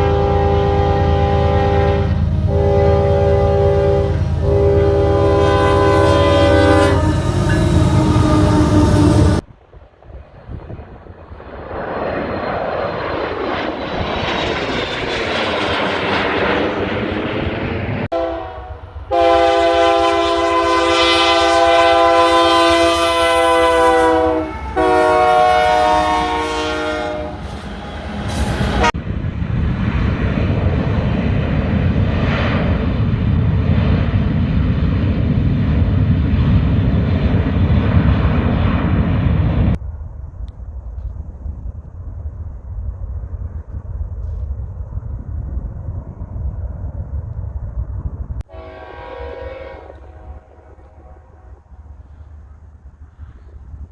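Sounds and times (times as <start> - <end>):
train horn chord: 0.0 - 9.4, 18.1 - 29.0, 48.5 - 52.2
train running past: 0.0 - 9.7, 12.4 - 39.8, 47.9 - 53.9.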